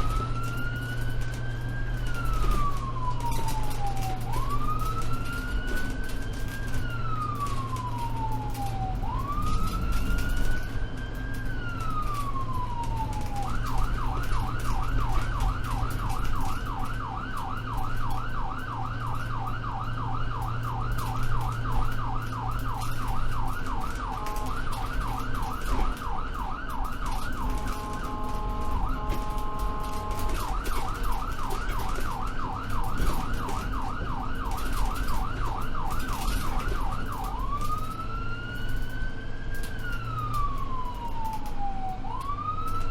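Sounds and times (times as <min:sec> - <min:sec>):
ambulance siren: 0:00.0 - 0:42.9
low vehicle rumble: 0:00.0 - 0:42.9.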